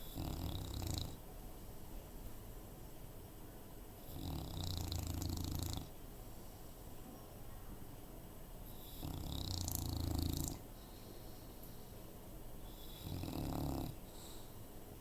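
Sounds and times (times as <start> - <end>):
dog snoring: 0.0 - 1.2, 4.0 - 6.0, 8.7 - 10.6, 12.7 - 14.1.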